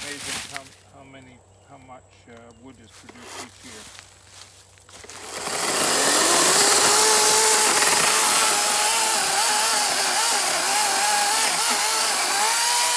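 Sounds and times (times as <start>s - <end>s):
electric chainsaw cutting wood: 5.0s - 12.9s.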